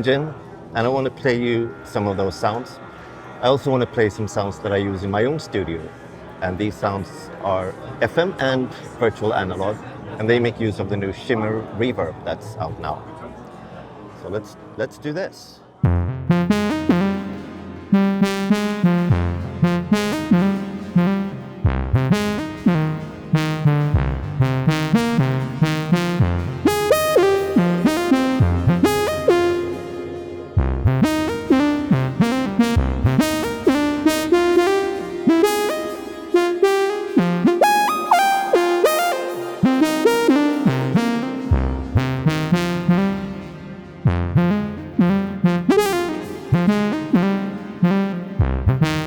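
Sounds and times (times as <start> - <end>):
synthesizer plucked notes: 15.8 - 49.0
low synth bass notes: 15.9 - 49.0.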